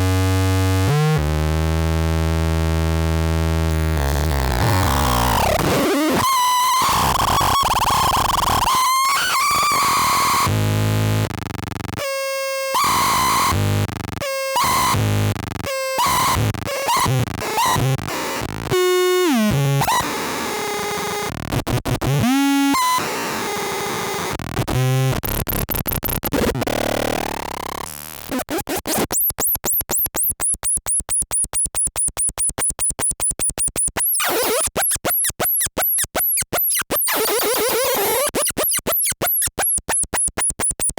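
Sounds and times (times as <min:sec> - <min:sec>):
harsh glitchy synth noise: 0:25.2 - 0:40.9.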